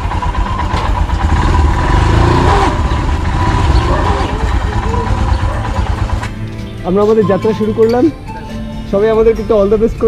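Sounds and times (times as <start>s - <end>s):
motorcycle engine low rumble: 0.0s - 7.2s.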